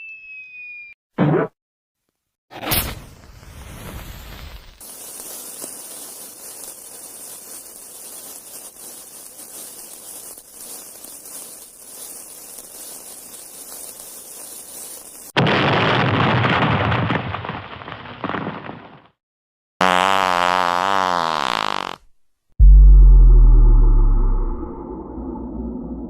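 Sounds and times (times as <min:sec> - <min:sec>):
high bright hiss: 0:04.8 - 0:15.4.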